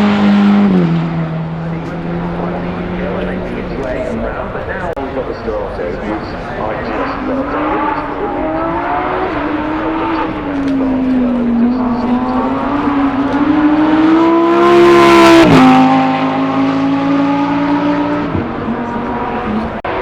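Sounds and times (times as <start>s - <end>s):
sports car passing by: 6.0s - 20.0s.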